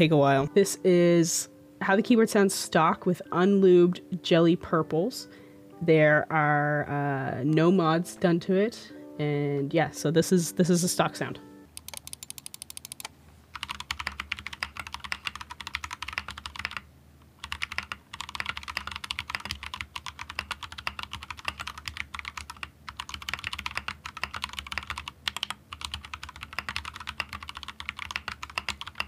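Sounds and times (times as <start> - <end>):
mechanical keyboard typing: 11.7 - 16.8, 17.4 - 29.0.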